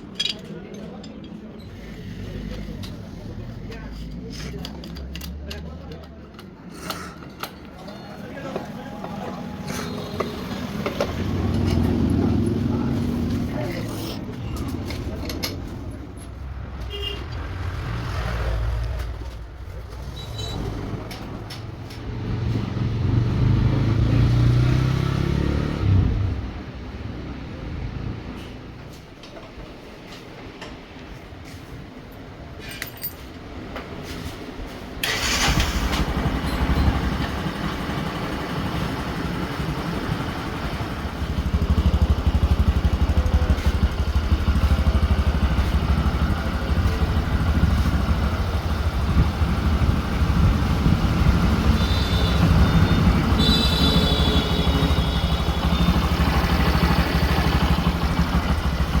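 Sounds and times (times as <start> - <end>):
motorcycle engine starting and running: 8.4 - 28.8, 35.0 - 59.0.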